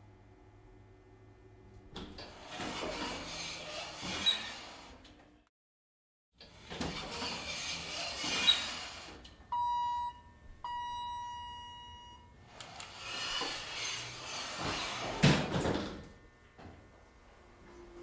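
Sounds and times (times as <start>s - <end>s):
elevator doors sliding: 2.0s - 5.3s, 6.5s - 9.2s, 12.6s - 16.0s
elevator chime dings: 9.5s - 12.4s
doors closing thump: 14.5s - 16.8s.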